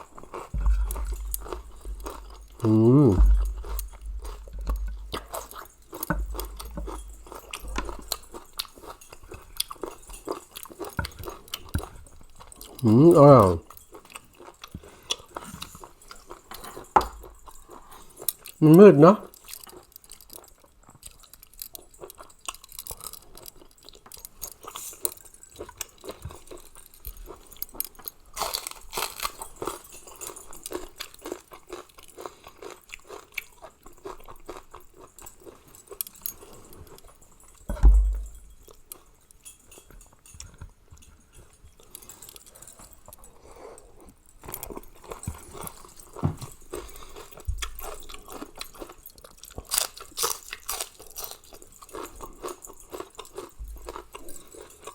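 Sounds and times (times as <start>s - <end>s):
person chewing and crunching food: 0.0s - 54.9s
dull thump: 0.6s - 2.6s, 3.2s - 5.4s, 37.7s - 38.5s.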